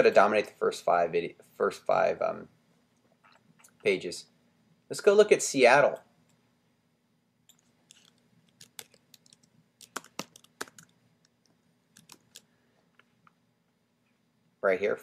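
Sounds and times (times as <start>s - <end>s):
typing on computer keyboard: 7.5s - 11.0s, 11.9s - 12.5s.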